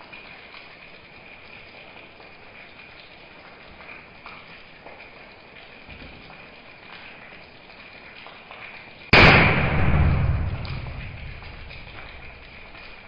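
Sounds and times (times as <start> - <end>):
toy gun bang: 9.2 - 11.6.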